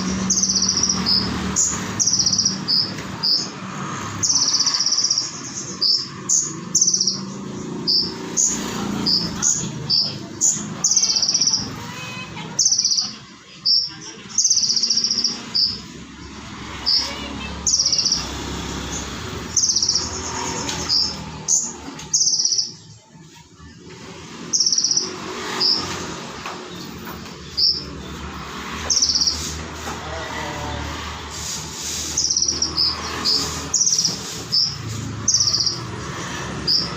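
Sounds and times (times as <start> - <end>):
bird singing high trilled bursts: 0.0 - 3.6, 32.1 - 35.9.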